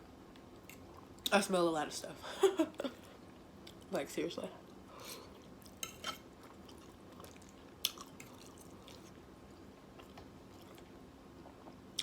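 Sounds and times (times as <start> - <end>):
wet chewing: 5.3 - 9.2.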